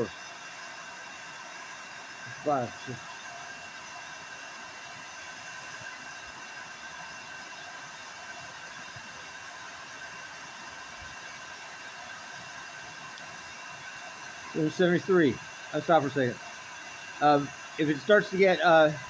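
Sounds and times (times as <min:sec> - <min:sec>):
hair dryer blowing: 0:08.6 - 0:19.0.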